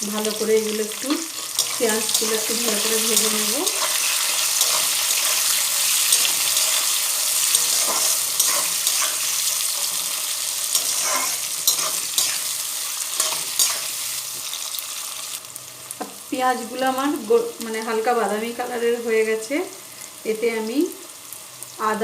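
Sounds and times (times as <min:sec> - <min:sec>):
onions sizzling in oil: 0:00.0 - 0:22.0
scraping against pan: 0:04.6 - 0:12.4.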